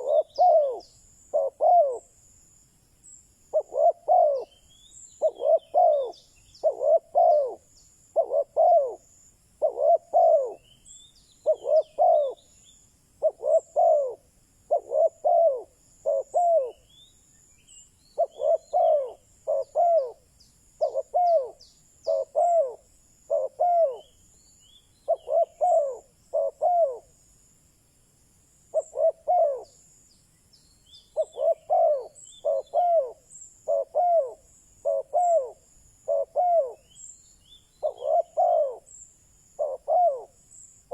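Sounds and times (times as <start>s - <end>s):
dove cooing: 0.0s - 2.2s, 3.5s - 4.6s, 5.2s - 10.7s, 11.4s - 12.4s, 13.2s - 17.0s, 18.2s - 20.2s, 20.8s - 24.2s, 25.0s - 27.1s, 28.7s - 29.8s, 31.2s - 37.0s, 37.8s - 38.9s, 39.6s - 40.4s
small birds chirping: 0.0s - 27.2s, 28.7s - 40.9s.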